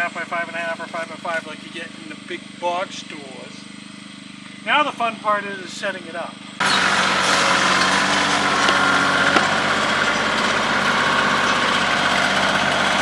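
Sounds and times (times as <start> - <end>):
heavy equipment engine running: 6.6 - 13.0.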